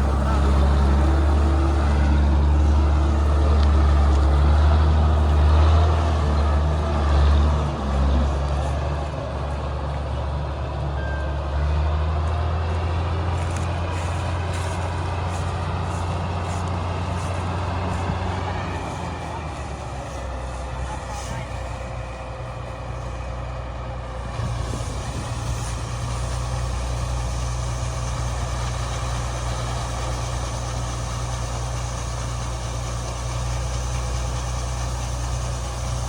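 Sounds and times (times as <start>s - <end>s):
diesel engine droning: 0.0s - 36.0s.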